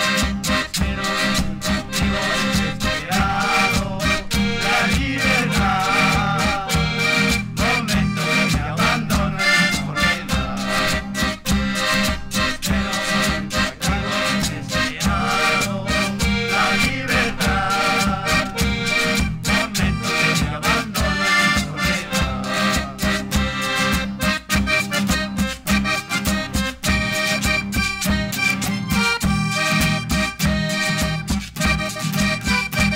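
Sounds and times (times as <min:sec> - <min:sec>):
instrumental ensemble music: 0:00.0 - 0:32.9.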